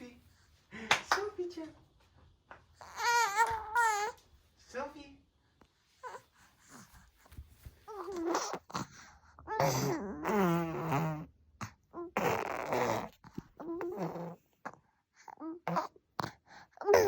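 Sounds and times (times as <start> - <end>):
baby making vocal noises: 2.8 - 4.2, 7.9 - 17.0.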